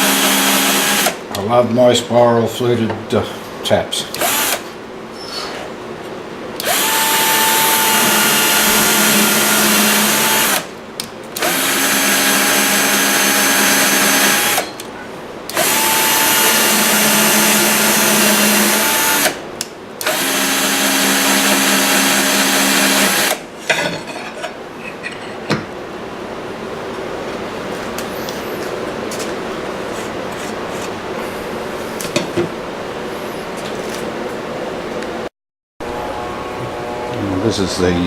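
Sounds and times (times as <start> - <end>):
power drill whirring: 0.0 - 1.2, 4.1 - 4.8, 6.6 - 10.7, 11.4 - 14.7, 15.5 - 19.4, 20.0 - 23.4.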